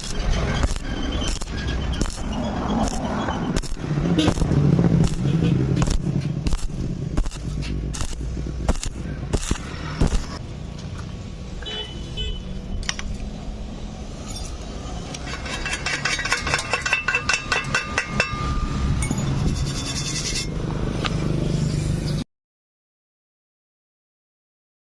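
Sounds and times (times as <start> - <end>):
metal scraping: 0.0 - 10.4, 14.2 - 21.0
sharp ringing metal taps: 15.4 - 19.4.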